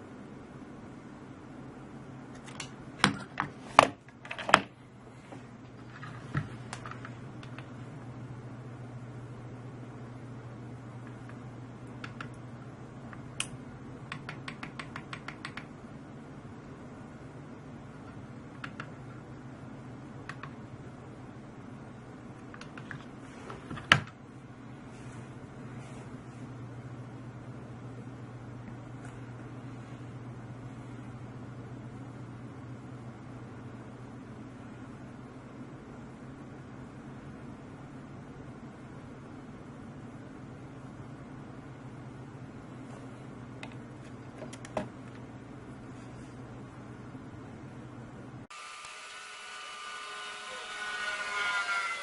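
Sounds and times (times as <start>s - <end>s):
faint low hum: 0.0s - 48.5s
sharp clicks and taps: 12.0s - 12.4s, 13.4s - 15.7s.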